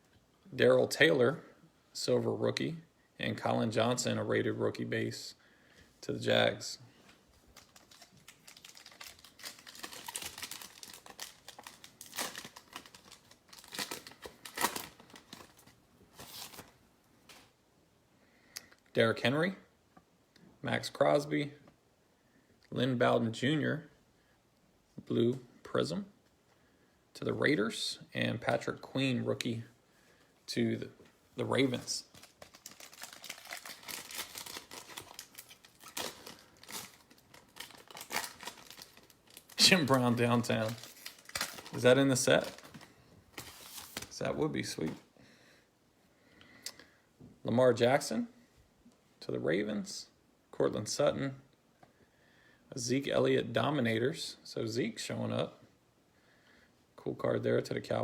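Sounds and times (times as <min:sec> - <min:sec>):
card pack wrapper tearing: 0:07.6 - 0:16.7, 0:32.0 - 0:44.2.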